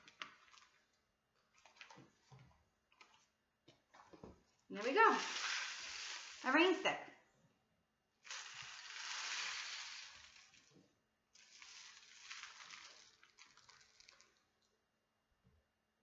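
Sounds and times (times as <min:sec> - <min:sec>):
rain stick rushing patter: 0:04.7 - 0:06.8, 0:08.2 - 0:10.8, 0:11.4 - 0:14.4.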